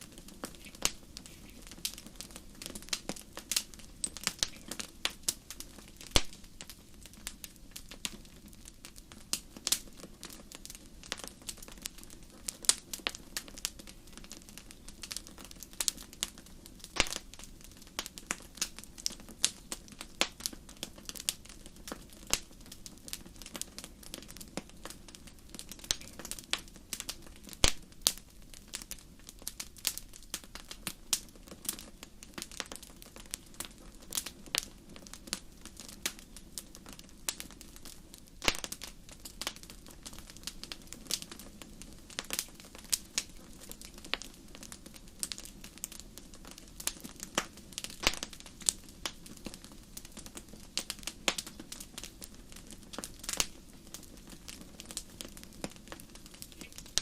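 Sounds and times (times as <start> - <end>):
wood fire crackling: 0.0 - 57.0
sharp pops and snaps: 0.1 - 25.0, 25.6 - 33.4, 38.4 - 41.5, 46.8 - 49.6, 52.6 - 57.0.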